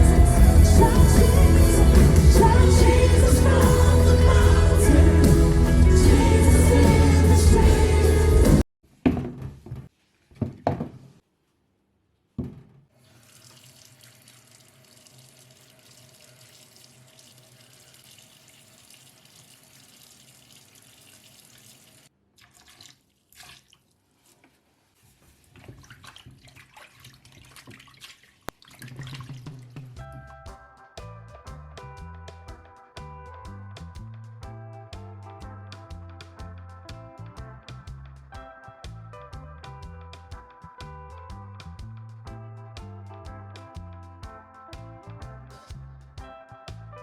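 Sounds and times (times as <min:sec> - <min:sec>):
tap water running into sink: 0:13.1 - 0:23.7.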